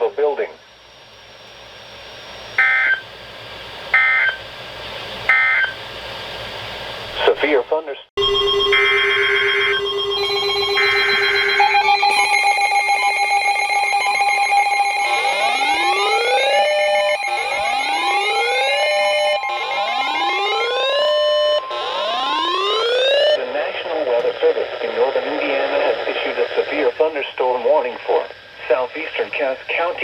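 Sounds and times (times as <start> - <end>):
rising siren-like wail: 2.5 - 3.0, 8.2 - 23.4
data bursts: 2.6 - 3.0, 3.9 - 4.4, 5.3 - 5.8, 8.2 - 29.6
steady alert tones: 2.6 - 3.0, 5.3 - 5.7, 8.2 - 23.4.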